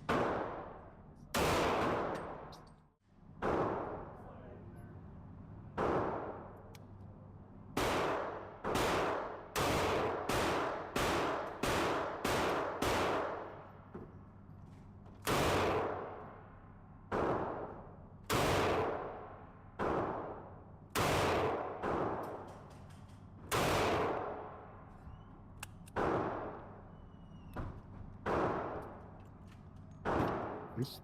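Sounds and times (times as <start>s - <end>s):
gunshots with echo: 1.4s - 2.5s, 7.8s - 13.6s, 17.1s - 22.4s, 30.0s - 30.9s.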